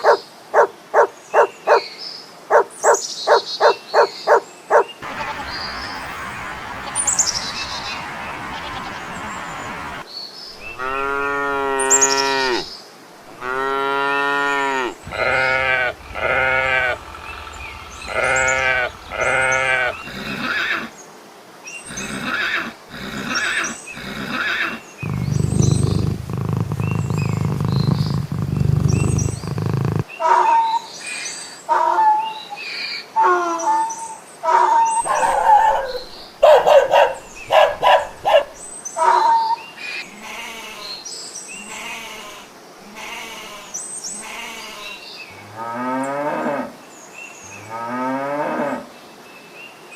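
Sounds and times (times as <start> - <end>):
farm animal calling: 3.3 - 20.9, 21.9 - 30.5, 34.4 - 45.0
low rumbling: 5.0 - 10.0, 14.5 - 20.5, 25.0 - 30.0.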